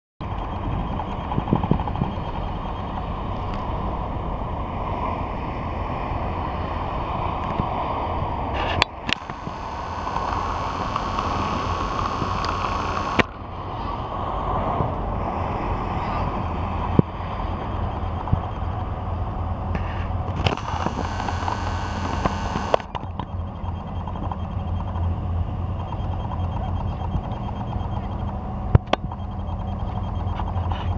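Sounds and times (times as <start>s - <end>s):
sharp clicks: 8.8s - 13.4s, 19.8s - 25.1s, 25.7s - 30.9s.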